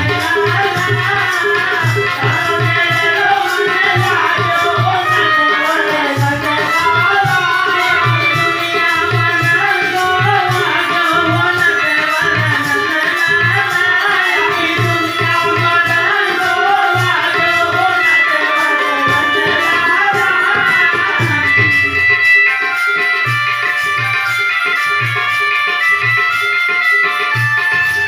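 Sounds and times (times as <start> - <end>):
hand drum beat: 0.0 - 11.6
person singing a melody: 0.0 - 22.1.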